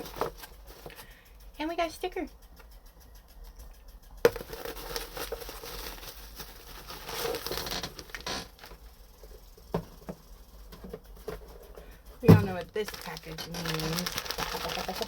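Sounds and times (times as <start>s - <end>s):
packaging crinkling: 4.3s - 8.8s, 12.3s - 15.0s.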